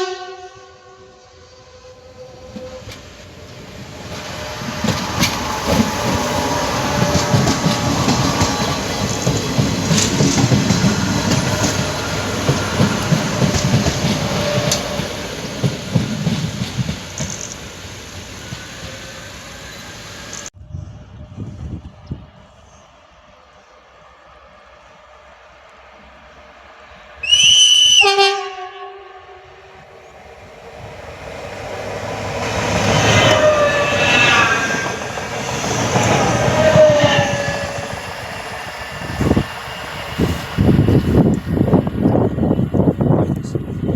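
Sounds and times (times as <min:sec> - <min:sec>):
train rumbling: 0:00.0 - 0:43.9
train wheels clattering: 0:02.5 - 0:17.8.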